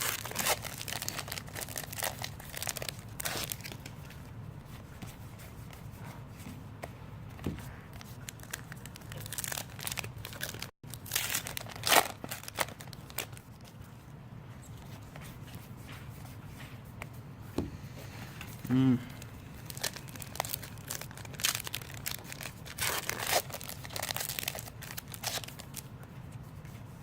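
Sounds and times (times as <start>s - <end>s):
foil wrappers crinkling and tearing: 0.0s - 4.1s, 7.9s - 13.7s, 19.6s - 25.9s.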